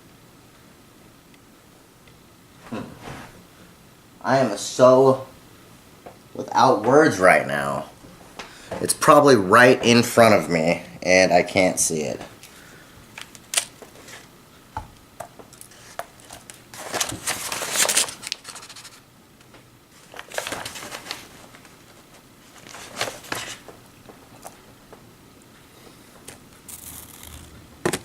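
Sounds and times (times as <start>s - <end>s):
plastic bags crinkling: 15.6s - 19.0s, 20.0s - 24.6s.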